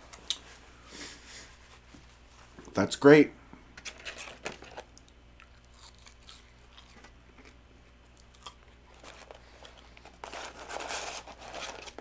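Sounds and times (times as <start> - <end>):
chewing and mouth clicks: 4.9 - 8.7
paper wrapper crinkling: 8.8 - 12.0.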